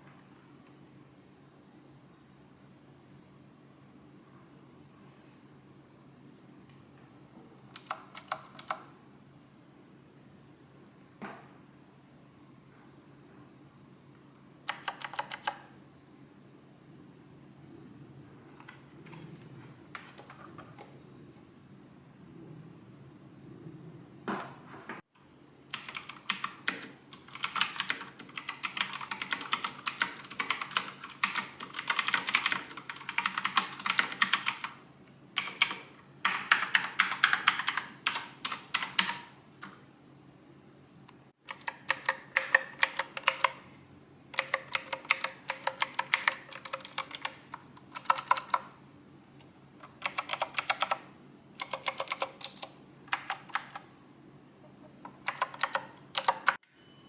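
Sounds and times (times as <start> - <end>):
keyboard key clicks: 55.1 - 56.6.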